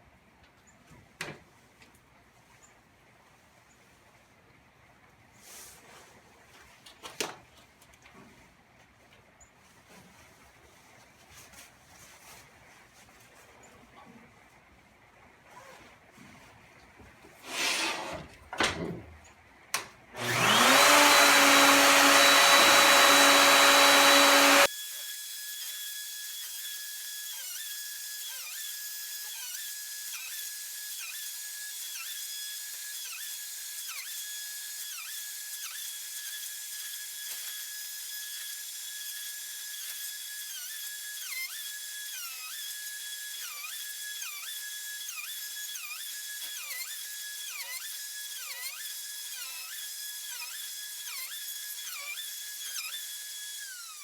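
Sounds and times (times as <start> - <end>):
router high whine: 20.2 - 24.7.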